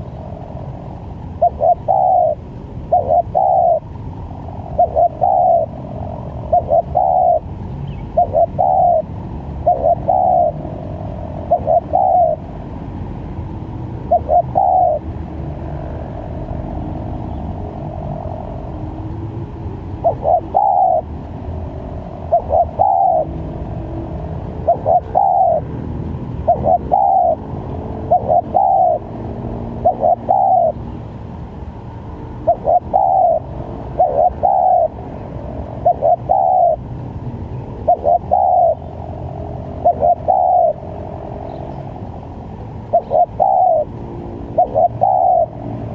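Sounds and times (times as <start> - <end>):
steady low rumble: 0.0 - 45.9
dove cooing: 1.4 - 12.6, 14.0 - 18.9, 20.0 - 21.1, 22.1 - 23.6, 24.4 - 30.8, 32.4 - 35.0, 35.7 - 36.8, 37.7 - 39.0, 39.6 - 40.9, 42.9 - 45.9.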